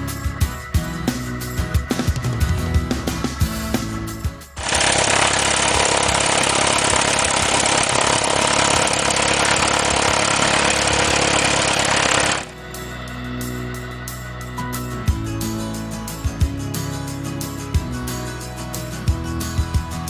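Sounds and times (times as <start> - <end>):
airplane engine and propeller: 4.6 - 13.0
guitar music: 12.5 - 20.0.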